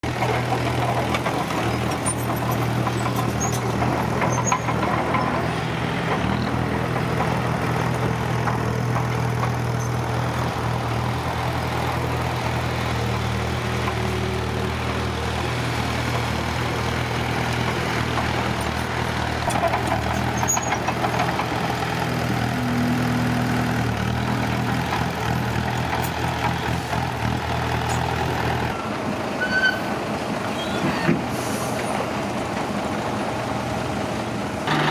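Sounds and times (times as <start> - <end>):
heavy diesel engine running: 0.0 - 34.9.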